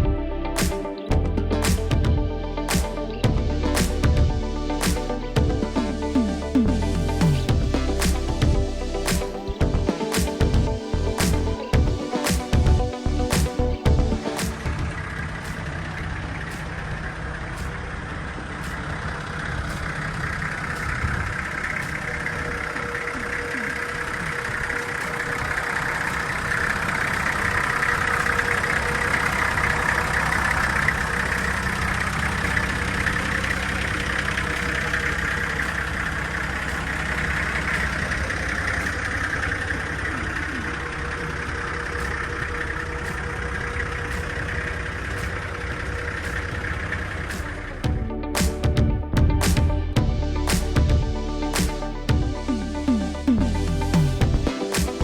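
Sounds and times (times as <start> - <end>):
diesel engine idling: 14.8 - 48.3.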